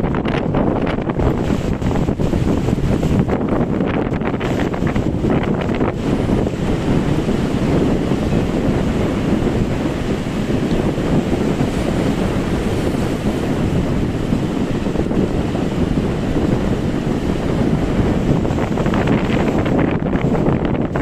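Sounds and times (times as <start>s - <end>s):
sea surf on shore: 0.0s - 21.0s
wind buffeting microphone: 0.0s - 21.0s.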